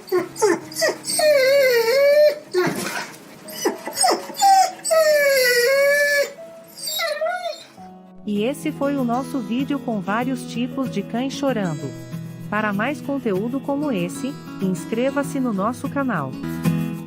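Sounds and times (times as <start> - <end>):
dog yelp: 0.0 - 7.8
dog whining and whimpering: 0.0 - 7.9.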